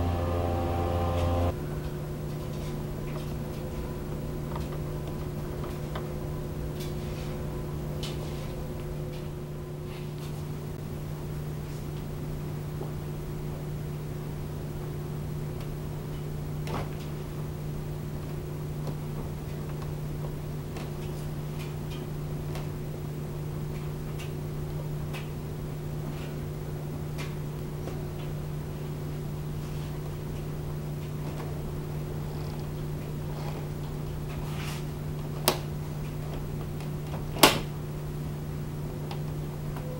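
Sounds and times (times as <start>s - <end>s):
steady low hum: 0.0s - 16.5s.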